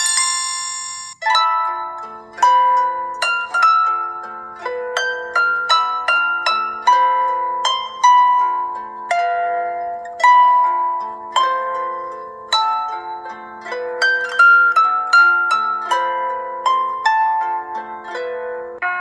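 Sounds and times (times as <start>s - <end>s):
ringtone melody of pitched notes: 0.0s - 2.0s.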